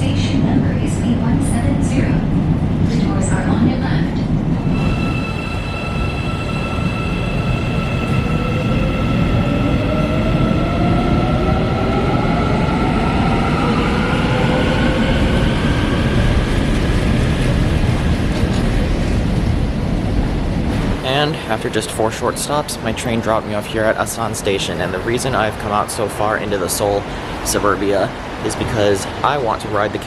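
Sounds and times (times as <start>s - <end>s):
electric train rumble: 0.0s - 30.0s
train whine rising in pitch: 4.6s - 18.8s.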